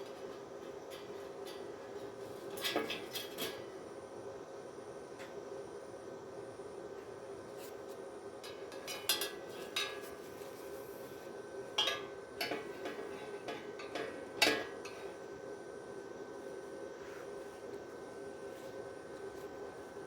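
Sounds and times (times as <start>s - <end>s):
steady hum: 0.0s - 20.0s.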